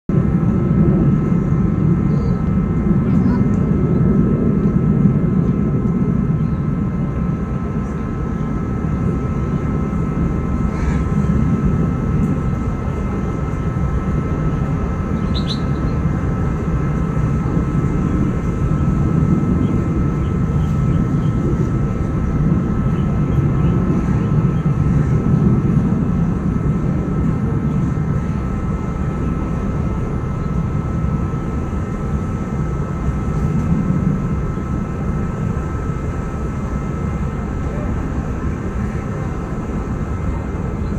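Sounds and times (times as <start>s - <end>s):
faint steady whine: 0.1s - 40.9s
low mechanical rumble: 0.1s - 40.9s.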